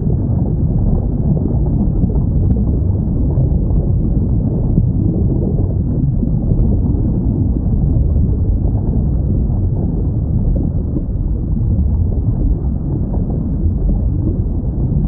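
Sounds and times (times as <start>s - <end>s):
low underwater rumble: 0.0s - 15.0s.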